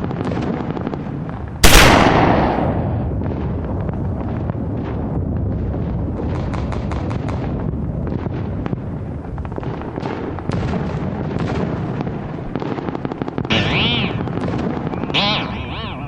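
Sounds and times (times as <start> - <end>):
wind rumble on microphone: 0.0 - 13.5
airsoft guns firing: 1.6 - 3.2, 12.5 - 15.8.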